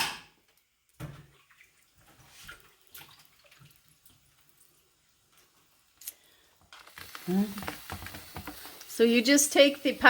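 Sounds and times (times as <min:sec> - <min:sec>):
water sloshing and dripping: 0:00.5 - 0:05.7.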